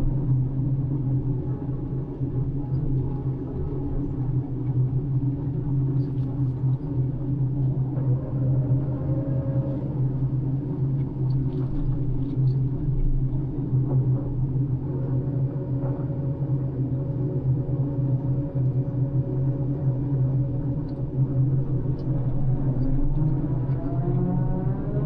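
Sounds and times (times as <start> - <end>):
crane engine droning: 15.0 - 25.0.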